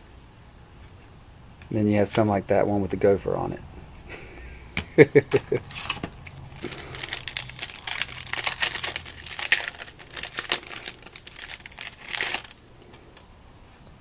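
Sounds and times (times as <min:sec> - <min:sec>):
foil wrapper crinkling and tearing: 0:05.6 - 0:12.6.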